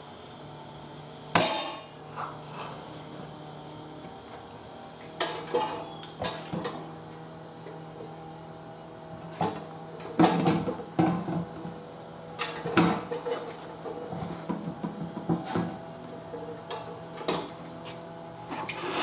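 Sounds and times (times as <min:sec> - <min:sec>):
metal clanks with ringing tail: 0:01.3 - 0:02.0.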